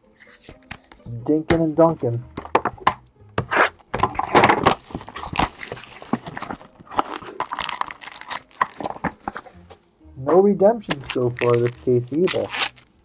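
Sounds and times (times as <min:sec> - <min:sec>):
cards and packaging rustling: 0:03.5 - 0:09.8, 0:10.8 - 0:13.0.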